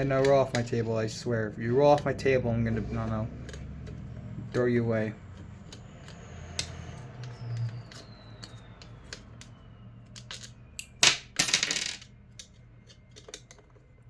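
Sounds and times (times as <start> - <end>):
metal parts clattering on table: 10.3 - 12.1.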